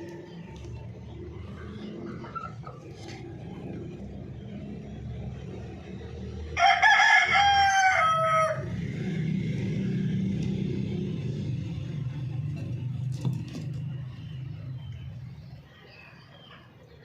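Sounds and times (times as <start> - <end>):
rooster crowing: 6.6 - 8.8.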